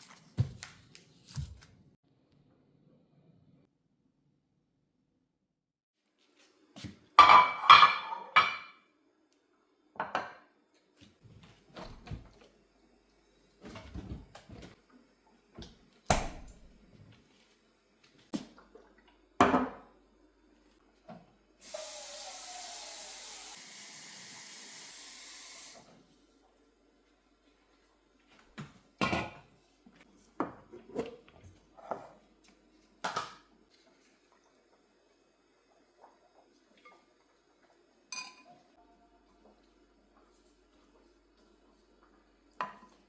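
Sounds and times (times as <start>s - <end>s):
dishes and utensils clattering: 7.2s - 8.8s, 38.1s - 38.6s.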